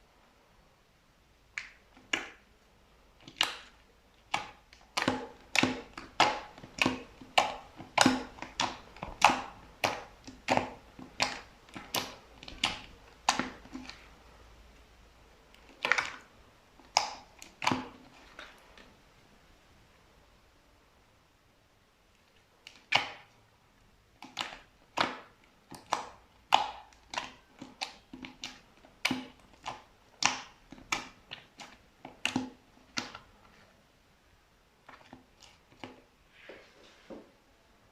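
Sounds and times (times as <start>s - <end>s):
slime with beads crackly pops: 3.2s - 14.1s, 24.2s - 33.2s.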